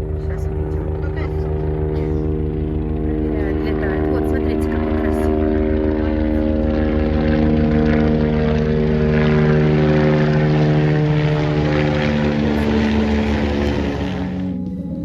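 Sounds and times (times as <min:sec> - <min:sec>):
helicopter rotor drone: 0:00.0 - 0:15.0.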